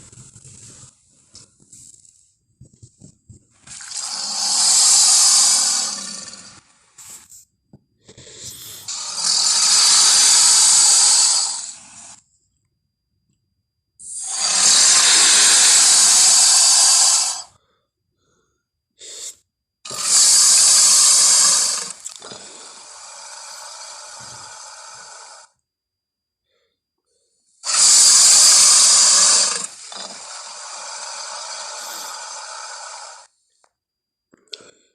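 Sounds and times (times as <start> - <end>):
breathy hiss: 0.0 - 12.2, 14.0 - 25.6, 26.6 - 33.4
creature hissing: 3.7 - 7.2, 8.2 - 12.2, 14.0 - 17.5, 19.9 - 25.5, 27.6 - 33.3.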